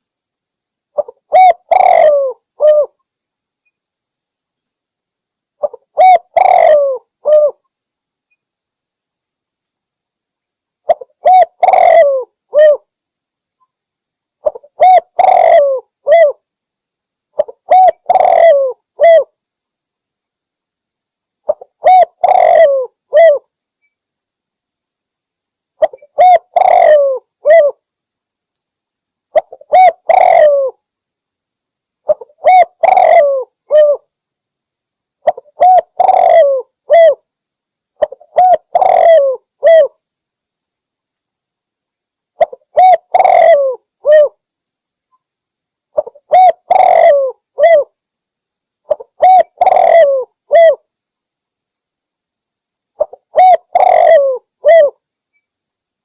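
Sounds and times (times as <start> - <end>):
dove cooing: 1.0 - 3.0, 5.6 - 7.6, 10.9 - 12.9, 14.4 - 16.4, 17.4 - 19.3, 21.5 - 23.5, 25.8 - 27.8, 29.4 - 30.8, 32.1 - 34.0, 35.2 - 37.2, 38.0 - 40.0, 42.4 - 44.4, 46.0 - 47.9, 48.9 - 50.8, 53.0 - 55.0.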